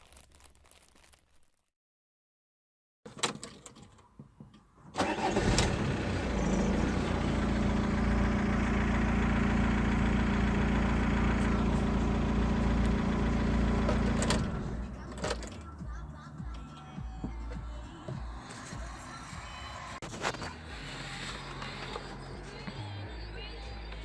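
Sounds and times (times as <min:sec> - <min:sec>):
car engine starting and idling: 0:04.8 - 0:16.6, 0:18.5 - 0:24.0.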